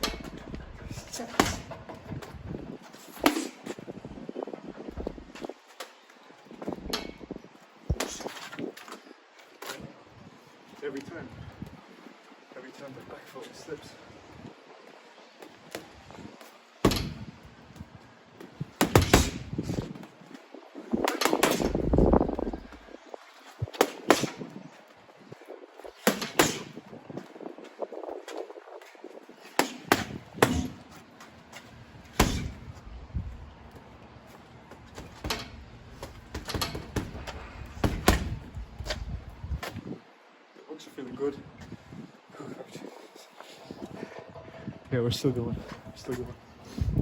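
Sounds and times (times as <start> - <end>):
gloves thudding on punch bag: 16.9 - 17.2, 18.8 - 19.8, 32.2 - 32.6, 37.8 - 38.5
rough scuffing noise: 30.7 - 32.9.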